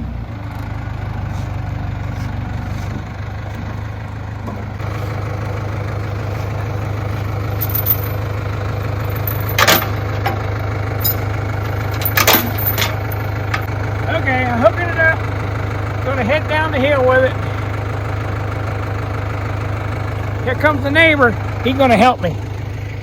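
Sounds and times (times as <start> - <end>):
vehicle engine idling: 0.0 - 23.0
chain clinks and knocks: 7.6 - 8.2, 9.0 - 9.9, 11.0 - 11.2, 11.9 - 13.6.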